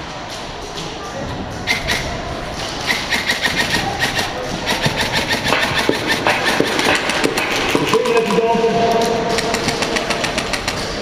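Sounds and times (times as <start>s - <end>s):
steady background din: 0.0s - 11.0s
airsoft guns firing: 2.8s - 11.0s.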